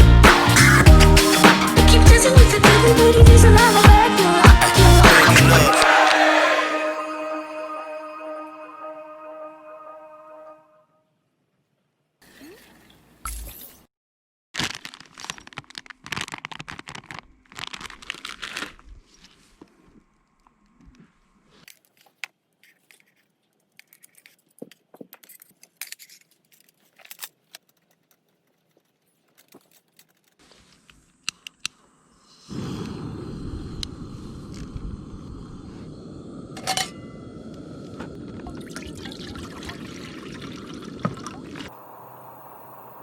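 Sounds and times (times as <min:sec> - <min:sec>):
packaging rustling and crinkling: 0:14.6 - 0:20.1, 0:21.5 - 0:30.9.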